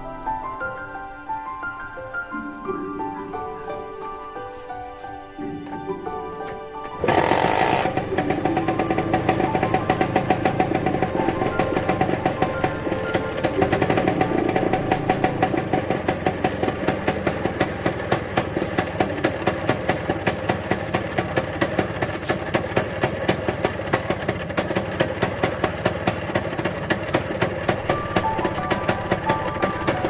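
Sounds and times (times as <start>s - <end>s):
small engine idling: 7.0s - 30.0s.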